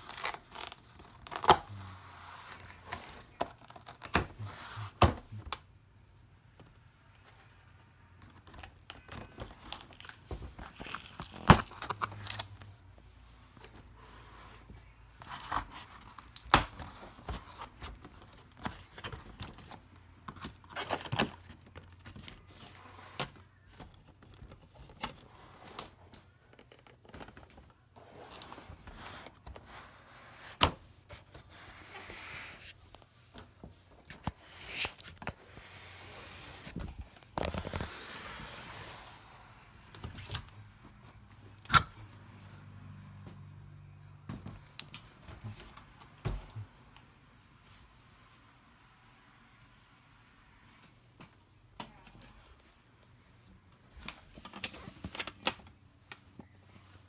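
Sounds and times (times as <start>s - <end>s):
packaging tearing and crinkling: 0.0s - 5.0s, 8.5s - 12.7s.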